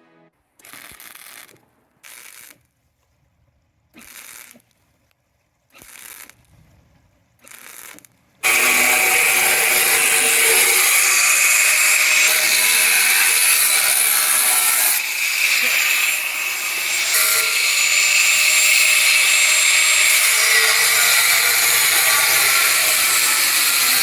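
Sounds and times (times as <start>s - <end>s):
loud power tool running: 8.4s - 24.0s.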